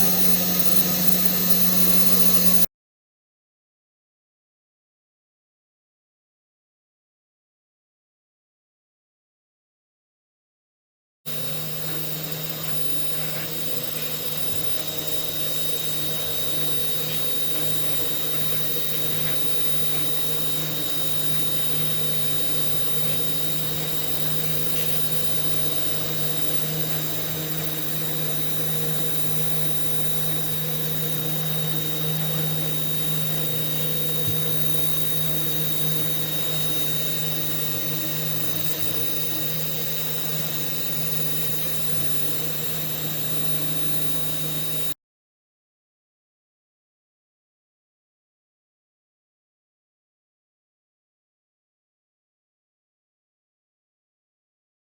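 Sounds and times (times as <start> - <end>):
router spindle humming and whining: 0.0 - 2.7, 11.3 - 45.0.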